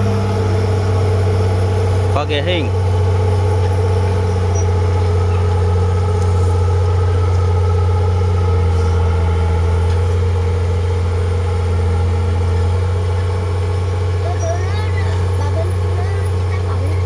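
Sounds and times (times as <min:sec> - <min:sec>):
heavy diesel engine drone: 0:00.0 - 0:17.0.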